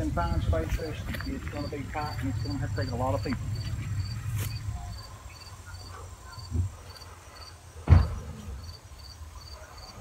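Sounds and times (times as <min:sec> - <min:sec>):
insect chirping: 0:01.1 - 0:10.0
dull thump: 0:07.8 - 0:08.3.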